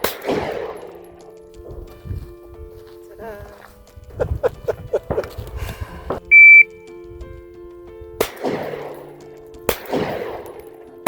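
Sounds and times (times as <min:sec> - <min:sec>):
pistol shots echoing: 0:00.0 - 0:01.4, 0:08.2 - 0:11.0
shot timer beep: 0:06.3 - 0:06.8.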